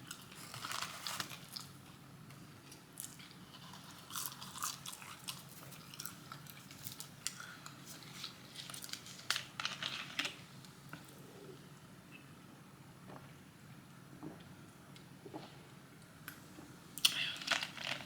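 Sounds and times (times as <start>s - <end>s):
chewing: 3.0s - 9.0s.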